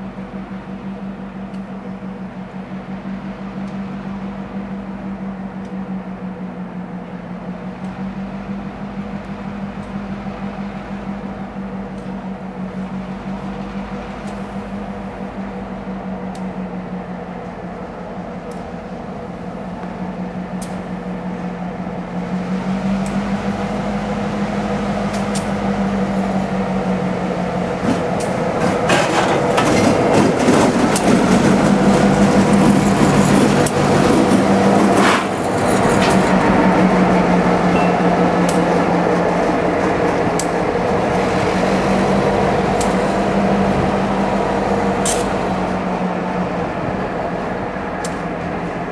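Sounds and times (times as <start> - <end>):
locomotive engine running: 0.0 - 48.9
train wheels clicking on rails: 16.0 - 21.6, 22.8 - 48.9.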